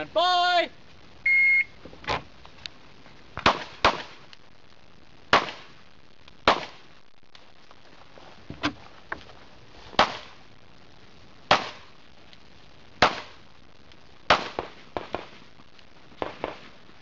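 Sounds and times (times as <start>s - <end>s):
pistol shots: 3.4s - 4.1s, 6.5s - 6.8s, 14.3s - 15.2s.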